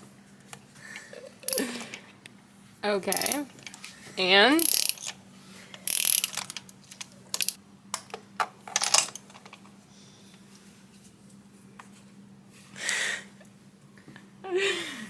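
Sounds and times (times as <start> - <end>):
hand tools clicking and clattering: 3.0 - 3.9, 4.6 - 9.7.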